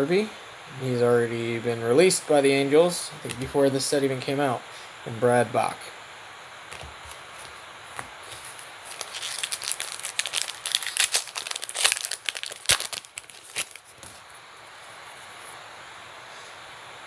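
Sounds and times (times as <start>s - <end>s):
wrapper tearing and crinkling: 7.1s - 14.2s.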